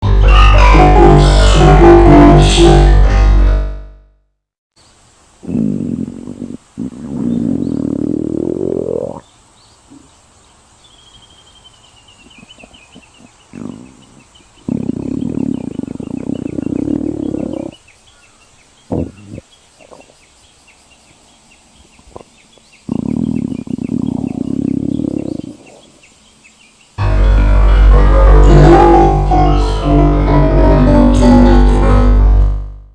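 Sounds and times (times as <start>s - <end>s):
cat stomach growling: 5.4s - 9.2s, 12.4s - 17.8s, 18.9s - 20.2s, 22.0s - 25.9s.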